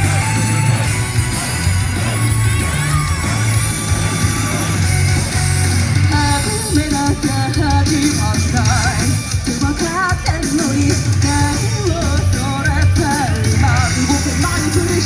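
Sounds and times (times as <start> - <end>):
live rock band playing: 0.0 - 15.0
person singing with vibrato: 6.1 - 15.0.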